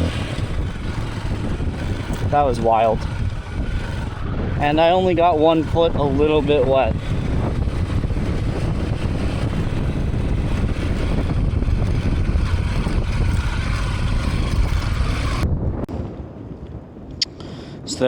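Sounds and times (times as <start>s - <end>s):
motorcycle engine rumble: 0.0s - 16.3s
wind buffeting microphone: 0.0s - 18.0s.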